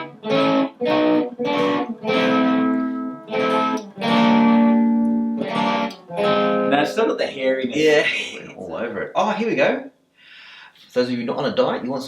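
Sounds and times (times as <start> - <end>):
distorted electric guitar chords: 0.0 - 6.9.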